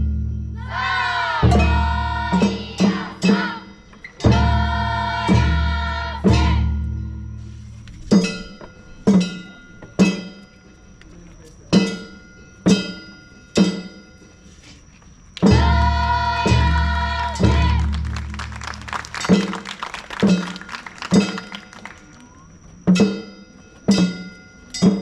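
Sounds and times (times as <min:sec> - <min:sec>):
drum booming: 0:15.5 - 0:18.6.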